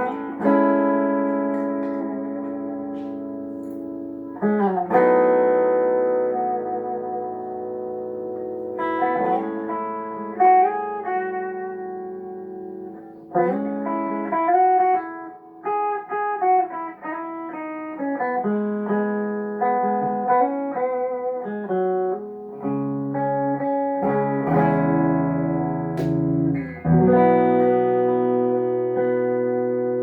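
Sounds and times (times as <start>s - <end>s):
electric guitar playing: 0.0s - 30.0s
sharp click: 26.0s - 26.3s.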